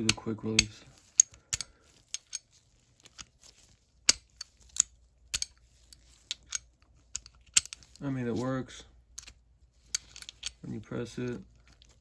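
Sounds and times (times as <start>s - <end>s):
metal clicks of socket on ratchet: 0.0s - 2.5s, 4.1s - 7.9s, 9.2s - 10.6s.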